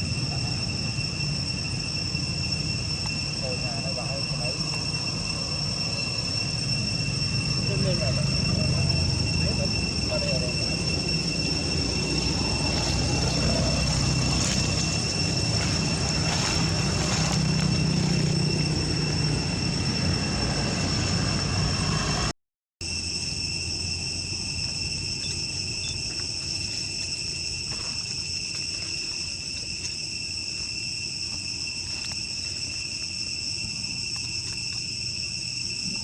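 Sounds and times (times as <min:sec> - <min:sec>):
low engine drone: 0:00.0 - 0:22.3
insects droning: 0:00.0 - 0:36.0.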